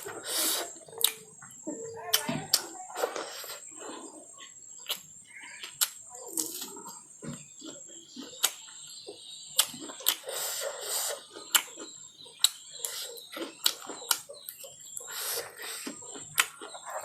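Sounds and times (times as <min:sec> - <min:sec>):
mouth smacks and clicks: 0:00.0 - 0:01.3, 0:04.8 - 0:06.7, 0:08.2 - 0:08.7, 0:09.6 - 0:16.8
chewing: 0:00.0 - 0:17.0.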